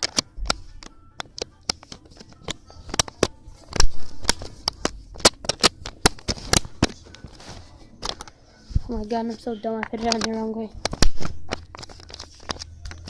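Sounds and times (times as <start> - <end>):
phone case clicks and snaps: 0.0 - 7.0, 10.0 - 12.7.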